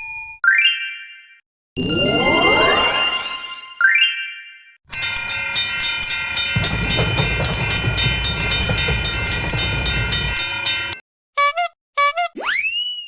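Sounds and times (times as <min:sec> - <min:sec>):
railroad crossing bell ringing: 0:04.9 - 0:11.0
low rumble: 0:05.3 - 0:11.0.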